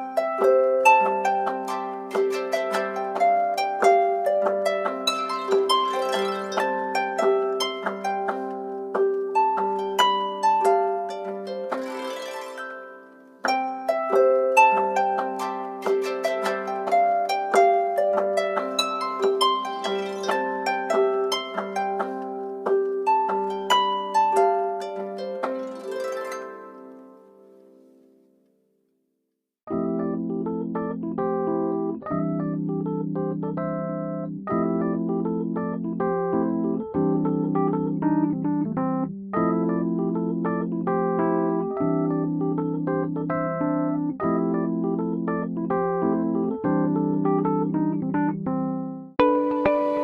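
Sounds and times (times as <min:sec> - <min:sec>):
harp-like plucked ringtone melody: 0:00.0 - 0:27.5, 0:49.2 - 0:50.0.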